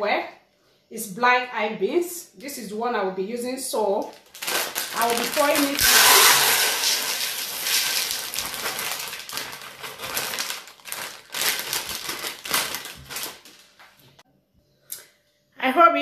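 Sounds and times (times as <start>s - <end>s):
dried beans pouring and rattling: 4.1s - 13.8s.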